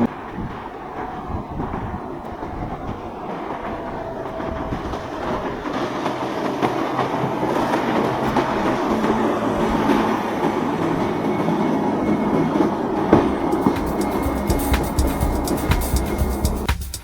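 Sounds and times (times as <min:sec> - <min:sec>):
train rumbling on rails: 0:00.0 - 0:17.0
train wheel clicks: 0:00.0 - 0:17.0.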